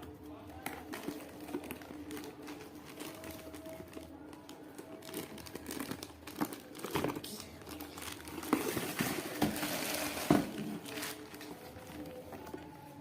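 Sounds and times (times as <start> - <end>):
packaging crinkling: 0.8 - 12.8.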